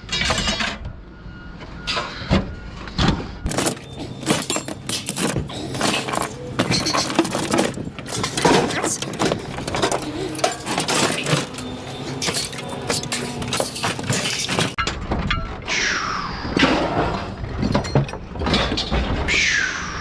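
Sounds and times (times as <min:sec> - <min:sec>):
scrap metal clattering onto pile: 0:03.5 - 0:14.8.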